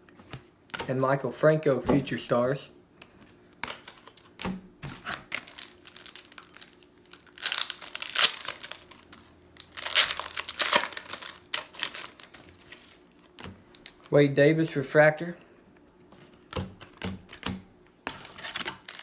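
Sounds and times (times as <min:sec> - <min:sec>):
foil wrapper crinkling and tearing: 0:05.0 - 0:14.1, 0:18.2 - 0:19.0.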